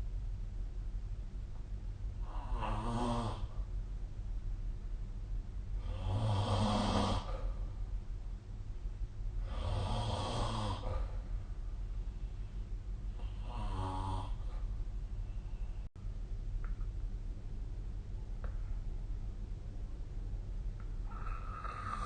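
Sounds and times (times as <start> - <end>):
person snoring: 2.2 - 3.6, 5.8 - 7.6, 9.4 - 11.2, 13.2 - 14.6, 21.0 - 22.0.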